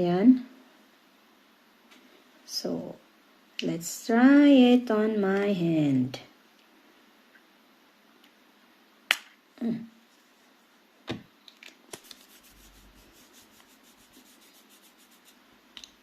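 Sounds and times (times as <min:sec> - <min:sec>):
faint rapid rubbing: 0:11.9 - 0:15.6.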